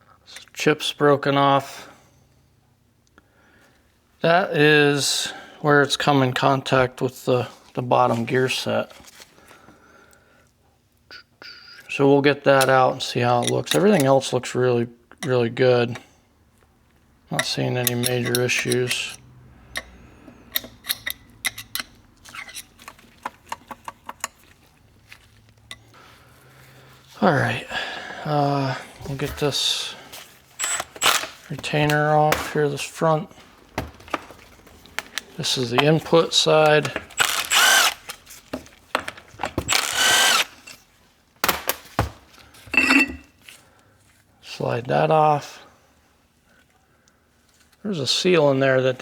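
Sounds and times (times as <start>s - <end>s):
power drill motor whine: 30.6s - 31.3s, 37.2s - 38.2s, 39.6s - 40.7s.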